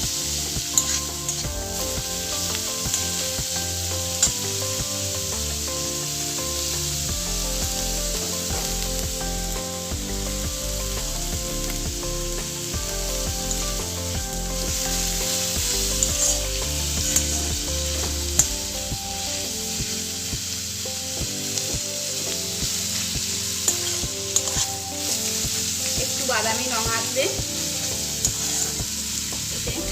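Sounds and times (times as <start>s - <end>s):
onions sizzling in a pan: 0.0s - 29.9s.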